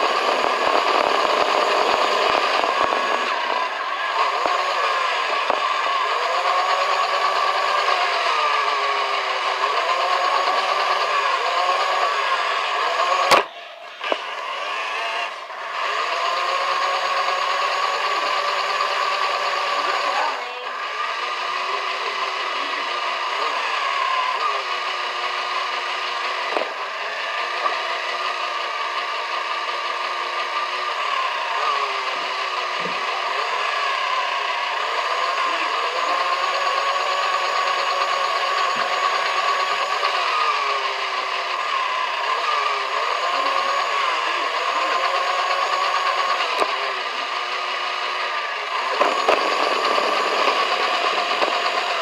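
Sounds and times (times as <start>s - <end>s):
machine whirring: 0.0s - 52.0s
sharp click: 13.3s - 14.3s.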